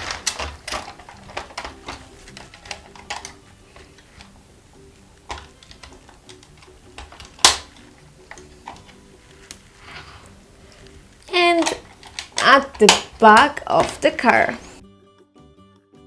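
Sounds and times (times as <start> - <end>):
plastic toy clicking and tapping: 0.0 - 4.3, 5.2 - 9.0, 11.3 - 14.2
quiet background music: 0.0 - 16.0
plastic toy snapping: 5.3 - 9.6, 11.5 - 14.0.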